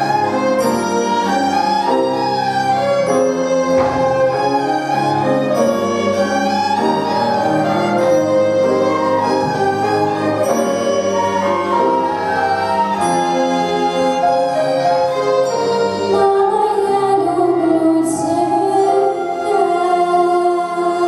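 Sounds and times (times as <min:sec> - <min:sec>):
orchestra playing bowed strings: 0:00.0 - 0:21.0.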